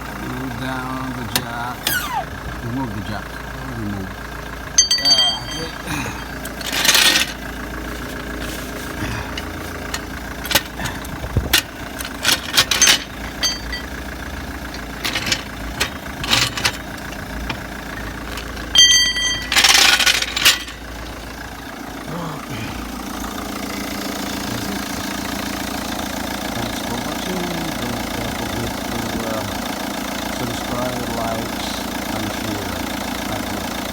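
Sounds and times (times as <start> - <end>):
diesel engine idling: 0.0 - 33.9
trolley jack metallic clanks: 1.2 - 2.3, 4.7 - 8.5, 9.2 - 21.4.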